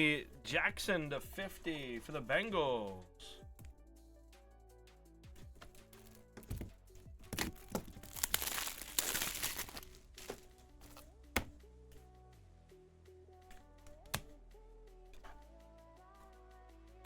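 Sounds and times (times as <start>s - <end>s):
background music: 0.0s - 17.0s
foil wrapper crinkling and tearing: 5.9s - 6.7s, 7.3s - 11.0s
cards clicking: 7.3s - 11.6s.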